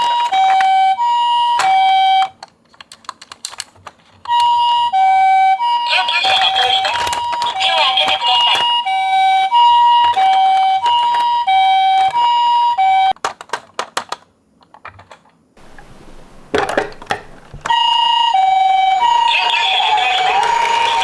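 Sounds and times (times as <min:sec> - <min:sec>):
two-tone ambulance siren: 0:00.0 - 0:02.4, 0:04.3 - 0:13.2, 0:17.1 - 0:21.0.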